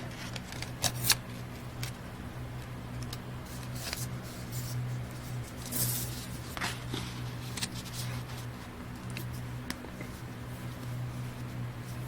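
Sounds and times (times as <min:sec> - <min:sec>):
steady low hum: 0:00.0 - 0:12.0
paper and cardboard rustling: 0:03.5 - 0:08.7.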